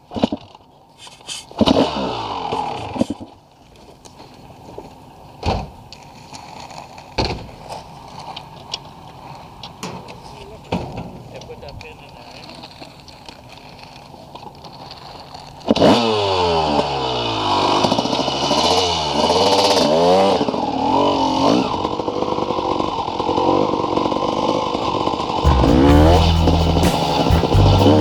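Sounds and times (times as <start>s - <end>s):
dirt bike engine revving: 1.6s - 3.0s, 15.8s - 22.1s, 25.4s - 28.0s.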